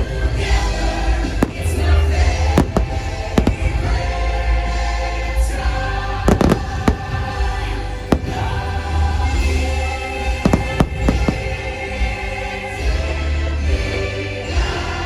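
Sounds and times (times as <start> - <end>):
fireworks bangs: 0.0 - 4.9, 6.2 - 12.3
deep rumble: 0.0 - 12.5
christmas music: 0.0 - 15.0.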